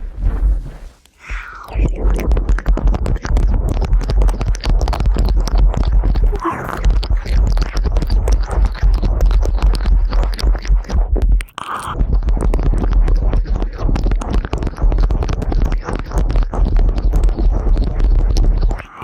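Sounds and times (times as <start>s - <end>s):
low rumble: 0.0s - 11.3s
ear-licking sounds on microphone: 0.0s - 19.0s.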